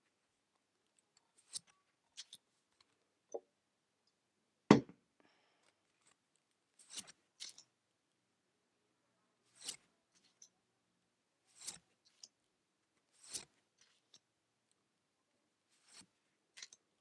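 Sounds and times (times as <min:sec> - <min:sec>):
cards swishing: 0:11.5 - 0:11.8, 0:13.1 - 0:13.6.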